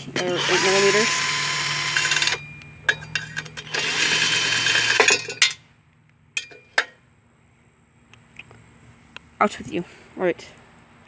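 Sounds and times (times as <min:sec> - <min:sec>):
cordless drill running: 0:00.4 - 0:02.4, 0:03.7 - 0:05.1.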